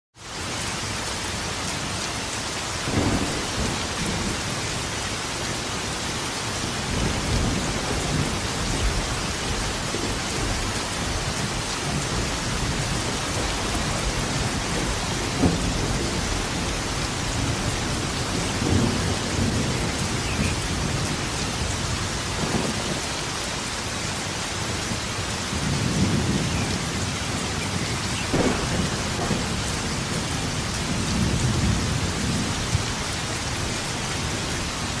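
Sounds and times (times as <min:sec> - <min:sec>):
heavy rain: 0:00.2 - 0:35.0
sharp thunderclap: 0:02.9 - 0:04.9, 0:06.9 - 0:21.1, 0:22.3 - 0:23.1, 0:27.6 - 0:33.0
thunder rumbling: 0:02.9 - 0:06.0, 0:06.6 - 0:24.0, 0:24.6 - 0:34.7.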